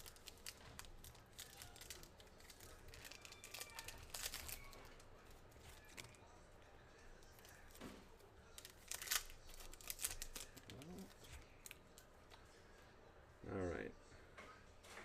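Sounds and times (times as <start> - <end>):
cards being handled: 0.0 - 6.2, 7.4 - 12.4
foil wrapper crinkling: 0.0 - 6.2, 8.5 - 12.0.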